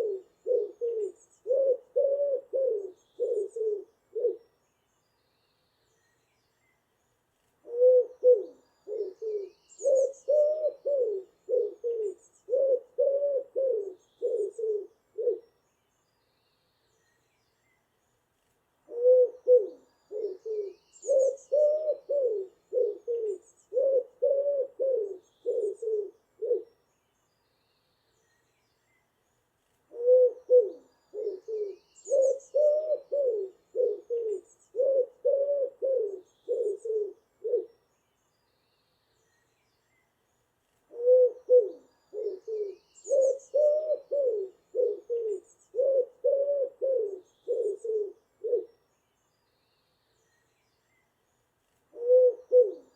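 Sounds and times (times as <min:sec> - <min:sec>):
pigeon cooing: 0:00.0 - 0:04.4, 0:07.7 - 0:15.4, 0:18.9 - 0:26.7, 0:29.9 - 0:37.7, 0:40.9 - 0:48.7, 0:51.9 - 0:52.9
small birds chirping: 0:00.0 - 0:52.9.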